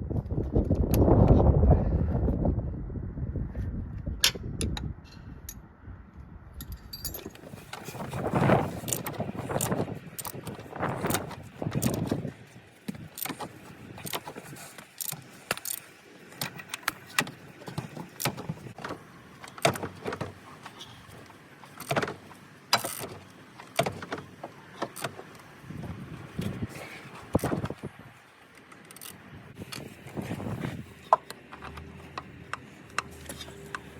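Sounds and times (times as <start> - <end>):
metal tools clinking: 6.6 - 8.2.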